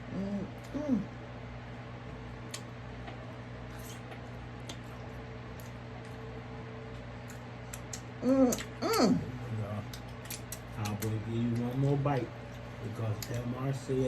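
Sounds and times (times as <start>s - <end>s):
electric fan humming: 0.0s - 14.0s
chewing clicks and smacks: 2.4s - 6.2s, 6.9s - 8.8s, 9.8s - 12.1s, 12.9s - 13.5s.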